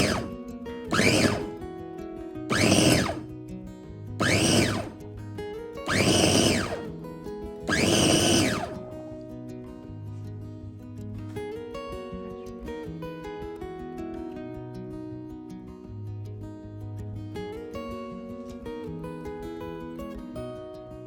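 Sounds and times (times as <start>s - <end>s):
electric blender pulsing: 0.0s - 0.3s, 0.9s - 1.6s, 2.5s - 3.3s, 4.2s - 5.0s, 5.9s - 6.9s, 7.7s - 8.8s.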